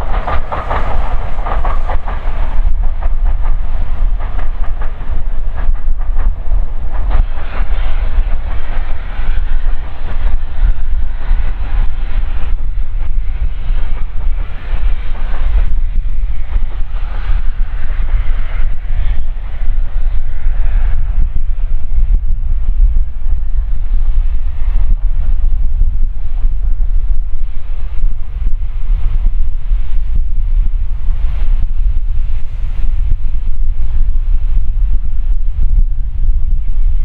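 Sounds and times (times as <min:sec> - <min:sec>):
wheels clicking on rails: 0:00.0 - 0:21.5
train rumbling past: 0:00.0 - 0:37.0.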